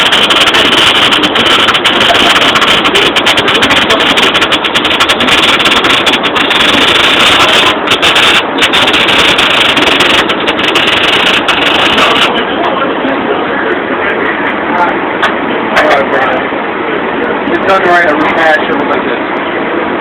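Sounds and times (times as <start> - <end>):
welder arc crackling hiss: 0.0 - 12.4.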